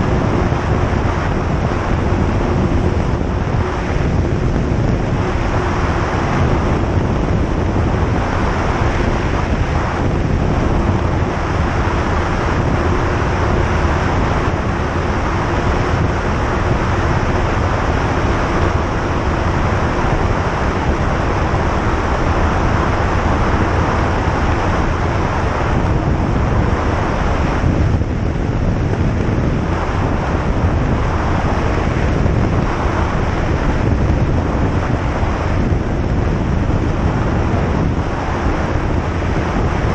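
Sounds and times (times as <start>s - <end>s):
airflow noise: 0.0s - 39.9s
light aircraft engine droning: 0.0s - 39.9s.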